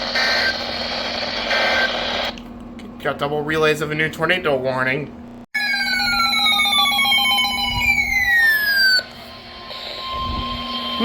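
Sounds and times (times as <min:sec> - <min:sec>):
steady alarm tone: 0:00.0 - 0:02.2, 0:05.6 - 0:11.0
electronic tones sliding downward: 0:05.6 - 0:11.0.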